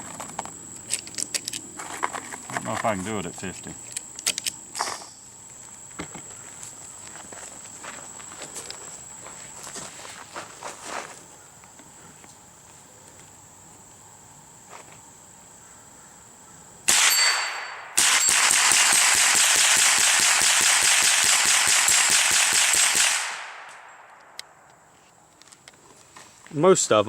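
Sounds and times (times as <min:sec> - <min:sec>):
rifle shots: 0:16.9 - 0:24.4.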